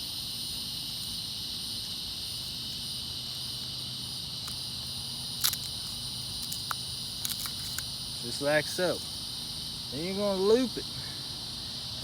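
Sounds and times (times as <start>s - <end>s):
insects droning: 0.0s - 12.0s
ratchet strap clicks: 5.4s - 7.9s.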